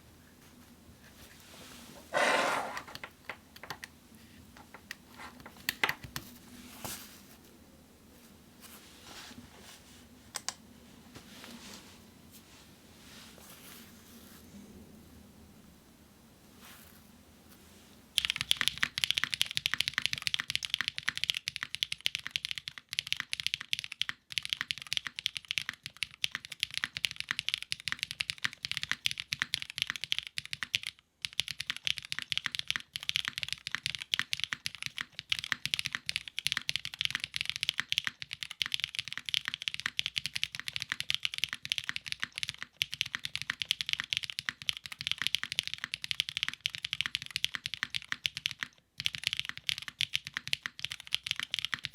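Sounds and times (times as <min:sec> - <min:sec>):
mechanical keyboard typing: 0:18.2 - 0:51.9.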